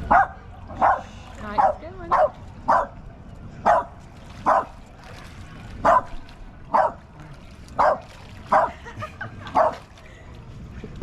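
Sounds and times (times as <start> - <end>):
dog barking: 0.1 - 3.0, 3.6 - 4.7, 5.8 - 6.1, 6.7 - 7.0, 7.8 - 8.7, 9.6 - 9.8.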